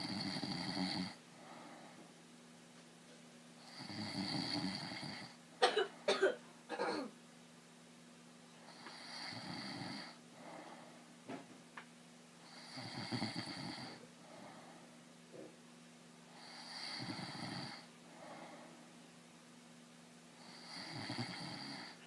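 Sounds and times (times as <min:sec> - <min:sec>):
man snoring: 0:00.0 - 0:01.2, 0:03.7 - 0:05.4, 0:08.7 - 0:10.2, 0:12.5 - 0:14.0, 0:16.4 - 0:17.9, 0:20.4 - 0:22.0.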